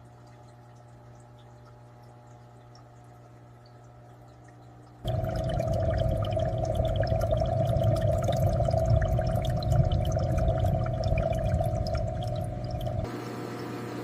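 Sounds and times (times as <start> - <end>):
aquarium water bubbling: 0.0 - 14.0
bubbles popping: 5.0 - 13.1
steady hum and low rumble: 5.1 - 13.1.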